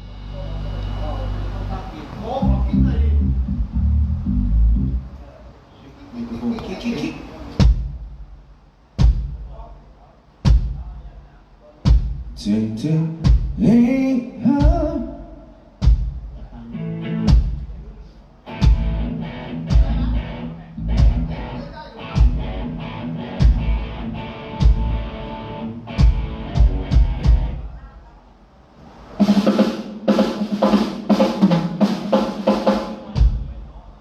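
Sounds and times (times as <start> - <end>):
bass drum and snare beat: 7.6 - 9.6, 10.4 - 10.9, 11.9 - 12.4, 13.2 - 13.6, 15.8 - 16.4, 17.3 - 17.7, 18.6 - 19.1, 19.7 - 20.2, 20.8 - 21.5, 22.2 - 22.7, 23.4 - 23.9, 24.6 - 25.0, 26.0 - 27.6
live band playing instrumental: 18.5 - 27.6, 29.2 - 33.4
fast run of drum hits: 26.0 - 27.6.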